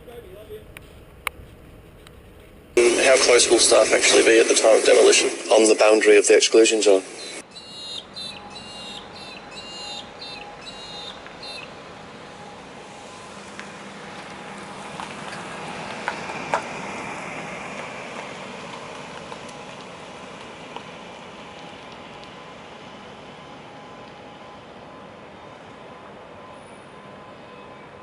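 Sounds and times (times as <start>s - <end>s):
steady rushing noise: 0.0s - 23.9s
bird chirping: 7.0s - 11.8s.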